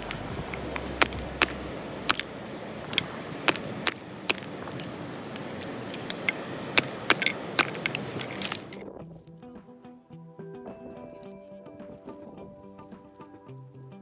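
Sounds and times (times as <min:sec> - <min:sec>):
campfire crackling and popping: 0:00.0 - 0:08.8
steady hiss: 0:00.0 - 0:08.8.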